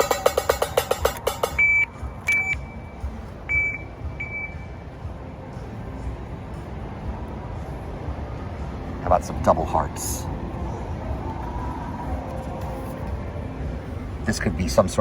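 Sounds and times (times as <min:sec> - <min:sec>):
short high beeps: 0:01.4 - 0:02.9, 0:03.5 - 0:04.7.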